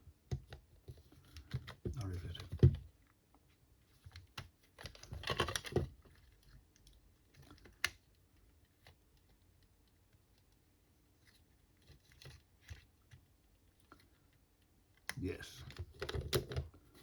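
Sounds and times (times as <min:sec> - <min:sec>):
plastic parts clicking and rattling: 0:04.8 - 0:06.2.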